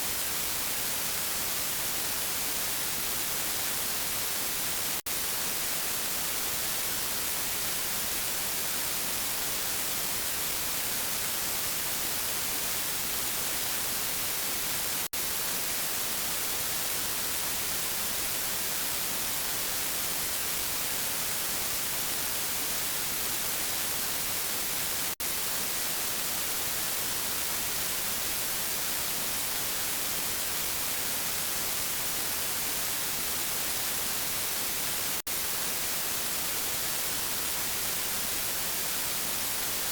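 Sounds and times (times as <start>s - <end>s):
static hiss: 0.0s - 39.9s.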